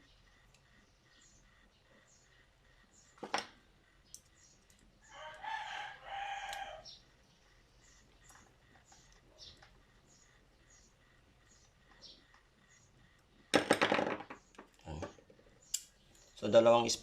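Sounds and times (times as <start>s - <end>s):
rooster crowing: 5.0s - 6.9s.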